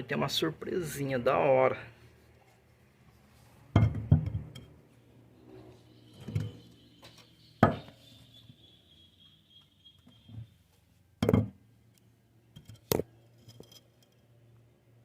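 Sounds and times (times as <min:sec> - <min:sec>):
metal tools clinking and knocking: 0:12.6 - 0:14.3.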